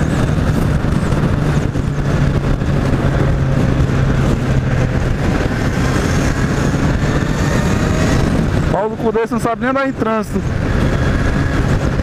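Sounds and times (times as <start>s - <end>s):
motorcycle engine running: 0.0s - 12.0s
wind and road noise: 0.0s - 12.0s.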